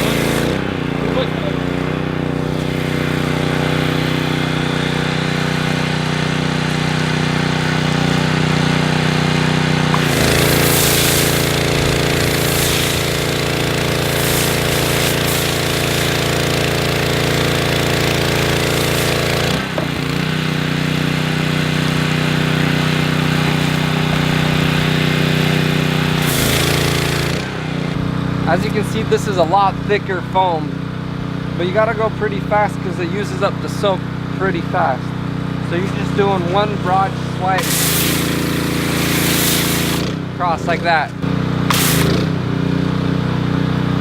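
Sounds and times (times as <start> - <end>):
spray hissing: 0.0 - 9.1, 9.8 - 27.9, 37.5 - 40.1, 41.7 - 42.3
pressure washer engine running: 0.0 - 44.0.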